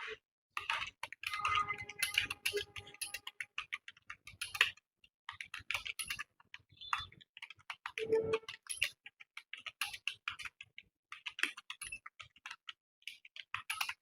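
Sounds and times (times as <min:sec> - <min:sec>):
keyboard typing clicks: 0:01.0 - 0:04.4.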